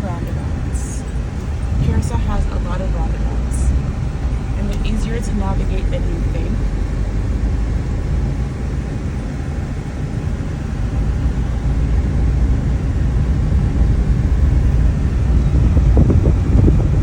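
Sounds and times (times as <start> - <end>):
car interior road rumble: 0.0 - 17.0.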